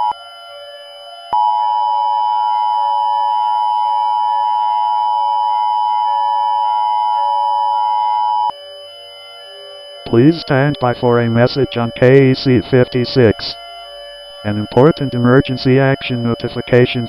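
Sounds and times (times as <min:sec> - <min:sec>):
steady electronic alert tone: 0:00.0 - 0:17.0.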